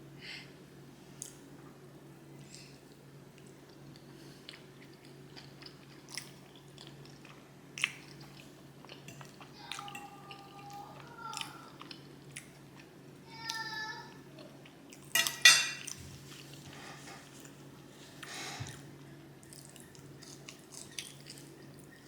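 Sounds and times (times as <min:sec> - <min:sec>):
chewing and lip-smacking: 0:02.4 - 0:13.6, 0:15.8 - 0:22.0.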